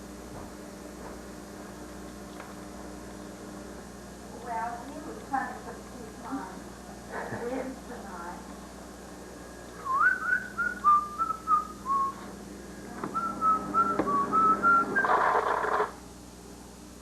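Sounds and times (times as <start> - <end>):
person whistling a tune: 9.8 - 12.2, 13.1 - 15.1.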